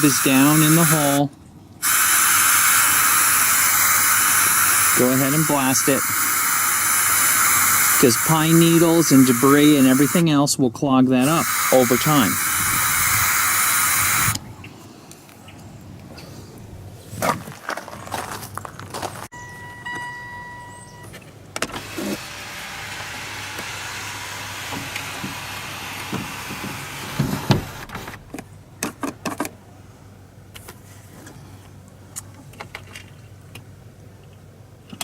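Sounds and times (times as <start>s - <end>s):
compressed air hissing: 0.0s - 1.2s, 1.8s - 10.2s, 11.2s - 14.5s.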